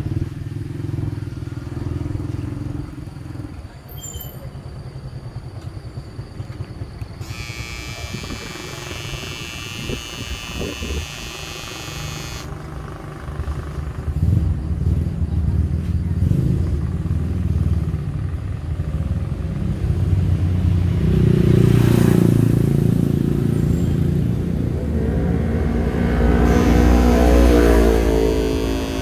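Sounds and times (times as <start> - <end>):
electric shaver buzzing: 7.2 - 12.6, 26.4 - 29.0.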